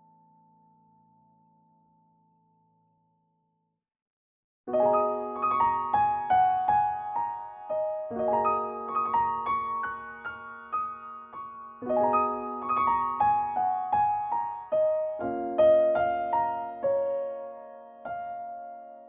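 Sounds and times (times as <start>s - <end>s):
piano music: 4.7s - 19.0s.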